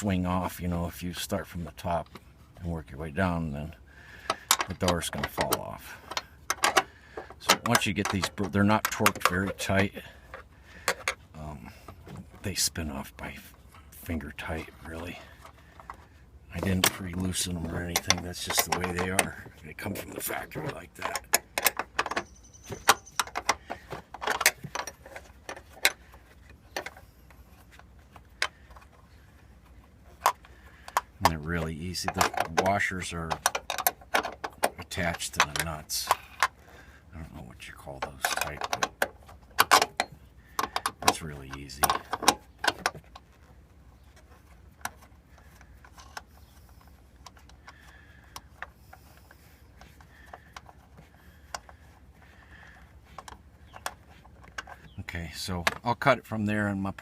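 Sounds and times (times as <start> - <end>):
low steady hum: 0.0 - 57.0
small metal clicks of nuts: 4.1 - 11.2, 14.3 - 36.9, 38.0 - 56.0
metal nuts clicking and clinking: 14.9 - 36.6.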